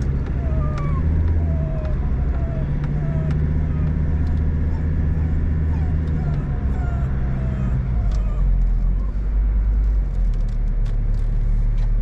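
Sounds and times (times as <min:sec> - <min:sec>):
car engine and road drone: 0:00.0 - 0:12.0
dog whining: 0:00.1 - 0:09.2.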